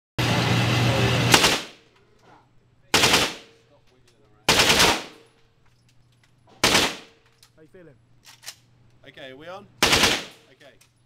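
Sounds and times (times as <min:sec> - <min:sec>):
machine gun firing bursts: 0:01.3 - 0:01.8, 0:02.9 - 0:03.5, 0:04.5 - 0:05.2, 0:06.6 - 0:07.1, 0:09.8 - 0:10.4.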